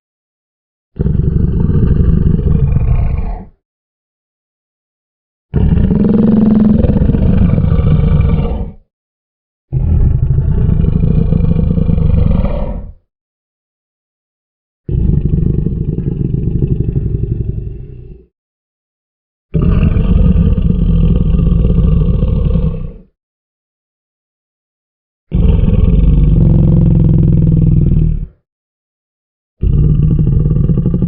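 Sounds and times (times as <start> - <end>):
crocodile growling: 1.0 - 3.6, 5.5 - 8.8, 9.7 - 13.0, 14.9 - 18.3, 19.5 - 23.1, 25.3 - 28.3, 29.6 - 31.0.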